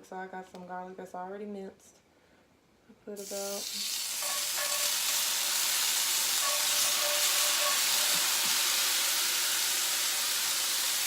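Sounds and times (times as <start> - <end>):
garlic sizzling in oil: 3.2 - 11.0.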